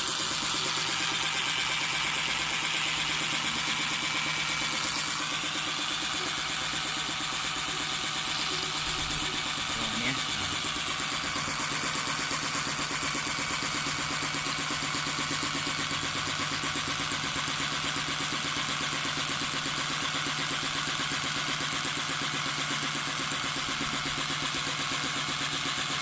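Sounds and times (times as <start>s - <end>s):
suction machine motor hum: 0.0s - 26.0s.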